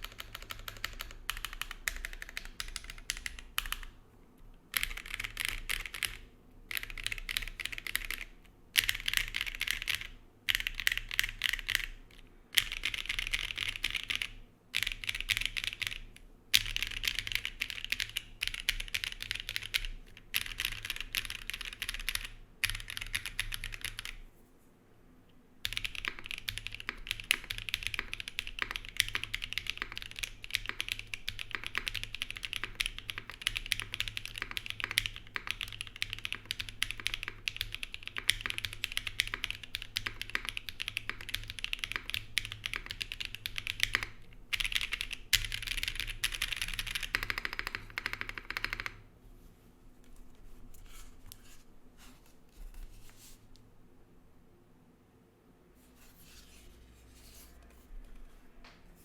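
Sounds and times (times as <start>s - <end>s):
mechanical keyboard typing: 0.0s - 3.9s, 4.7s - 24.2s, 25.6s - 49.0s.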